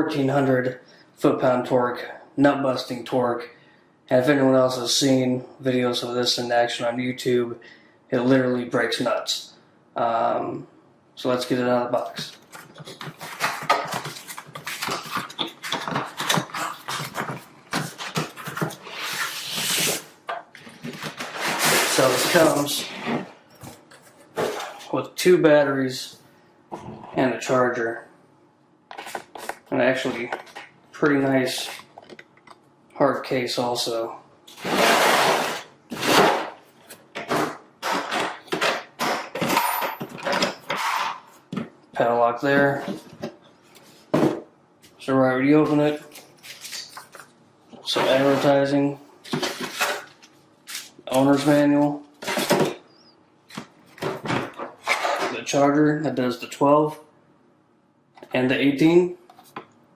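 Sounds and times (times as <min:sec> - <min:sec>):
cardboard packaging rustling: 0:12.2 - 0:24.9
plastic tool case knocking and scraping: 0:12.6 - 0:18.8, 0:37.1 - 0:41.7, 0:54.0 - 0:55.4
contents scraping out of box: 0:12.6 - 0:23.3, 0:34.5 - 0:36.6.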